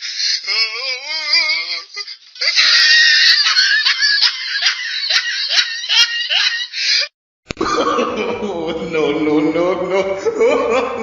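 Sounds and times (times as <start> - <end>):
high wavering laugh: 1.8 - 8.9, 9.7 - 11.0
loud dense laugh: 2.4 - 11.0.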